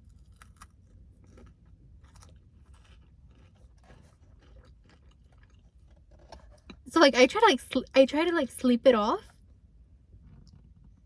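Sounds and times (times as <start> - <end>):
person chewing food: 0.0 - 6.8.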